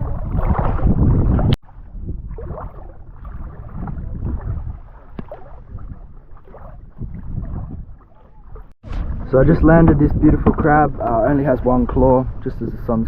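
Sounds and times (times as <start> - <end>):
water sloshing around wading legs: 0.0 - 8.8.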